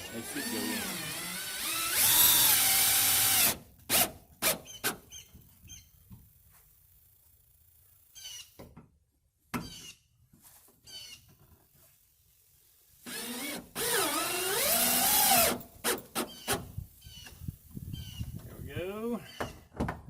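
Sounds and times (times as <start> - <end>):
power drill motor whine: 0.0 - 4.0, 13.1 - 15.6.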